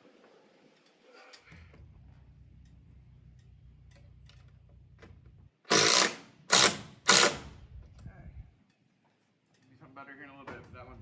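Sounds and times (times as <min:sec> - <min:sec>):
low steady hum: 0:01.5 - 0:05.7
power drill driving a fastener: 0:05.7 - 0:07.7.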